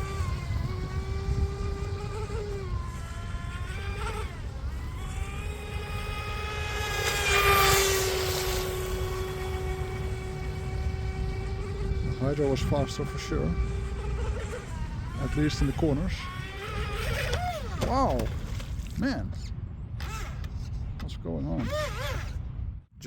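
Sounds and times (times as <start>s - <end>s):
rc boat motor whine: 0.0s - 18.6s, 21.5s - 22.4s.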